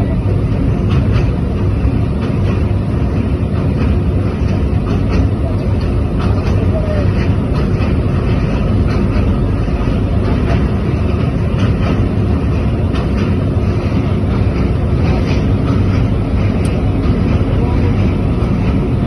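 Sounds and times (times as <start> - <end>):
train running rumble: 0.0 - 19.0.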